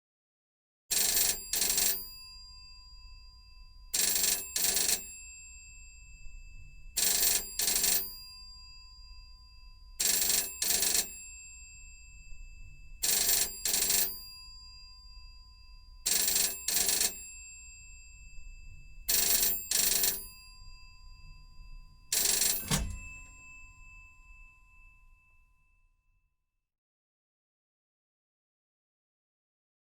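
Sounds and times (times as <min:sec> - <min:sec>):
telephone double ring: 0:00.9 - 0:02.2, 0:04.0 - 0:05.2, 0:07.0 - 0:08.2, 0:10.0 - 0:11.2, 0:13.0 - 0:14.3, 0:16.1 - 0:17.3, 0:19.1 - 0:20.4, 0:22.1 - 0:23.5.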